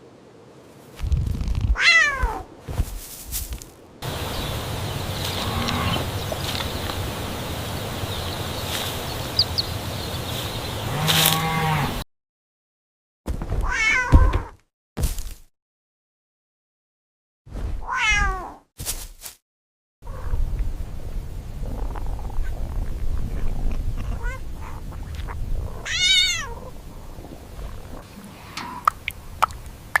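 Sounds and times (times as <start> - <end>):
steady background hiss: 0.0 - 1.2, 2.4 - 12.0, 20.6 - 30.0
cat meowing: 1.8 - 2.4, 17.9 - 18.6, 24.0 - 26.6.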